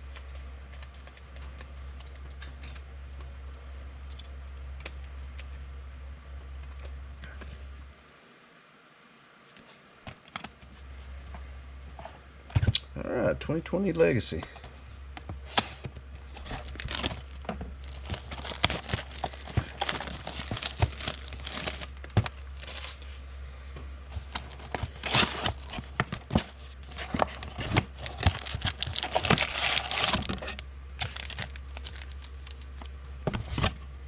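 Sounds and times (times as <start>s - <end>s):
foil wrappers torn and crinkled: 0.0s - 2.8s, 15.7s - 23.1s, 24.2s - 32.9s.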